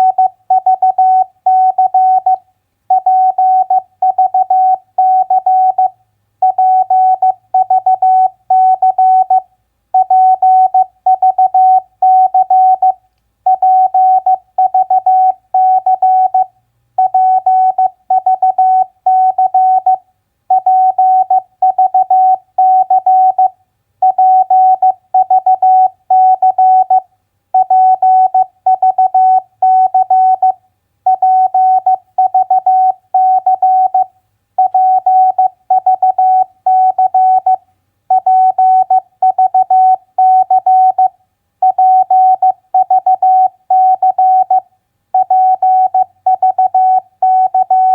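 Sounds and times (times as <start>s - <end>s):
morse code tone: 45.2s - 47.9s.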